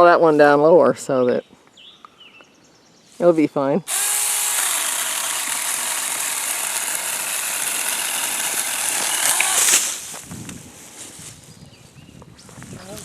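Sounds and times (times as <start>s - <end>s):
electric chainsaw cutting wood: 3.9s - 10.0s.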